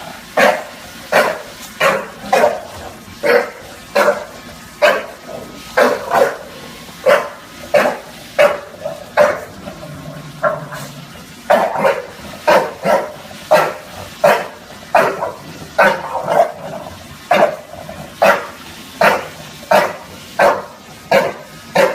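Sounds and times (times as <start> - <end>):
dog barking: 0.4 - 5.2, 5.8 - 6.4, 7.0 - 9.5, 11.5 - 16.6, 17.3 - 17.6, 18.2 - 21.9.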